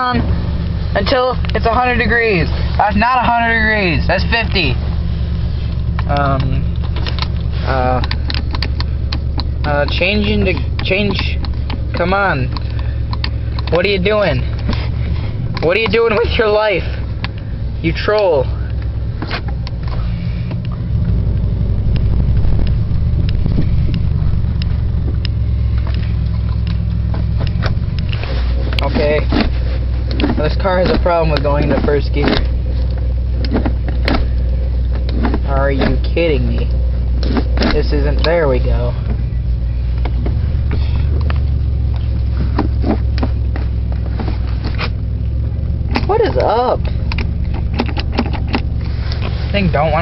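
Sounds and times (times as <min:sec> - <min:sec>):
engine exhaust rumble: 0:00.0 - 0:50.0
light sharp clicks: 0:05.7 - 0:13.8.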